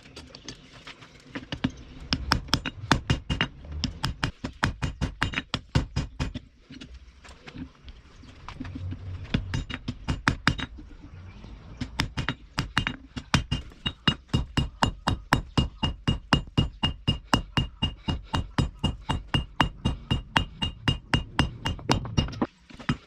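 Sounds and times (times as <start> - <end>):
hammer striking steel on anvil: 12.0 - 22.5.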